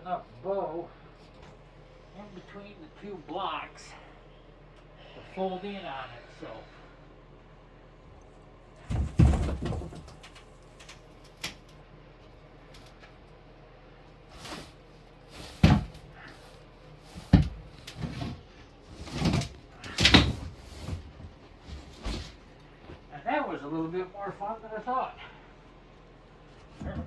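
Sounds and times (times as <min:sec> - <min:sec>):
knocks and thuds of lumber: 0:08.8 - 0:10.4, 0:15.4 - 0:16.2, 0:17.2 - 0:18.4.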